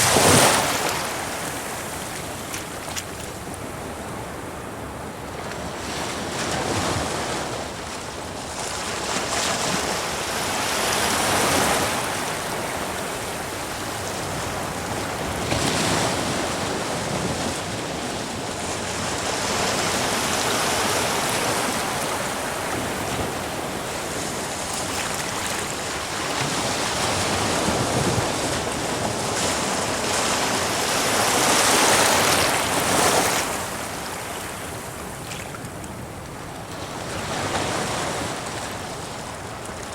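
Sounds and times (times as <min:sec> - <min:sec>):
waves breaking against rocks: 0:00.0 - 0:04.3, 0:13.8 - 0:36.1.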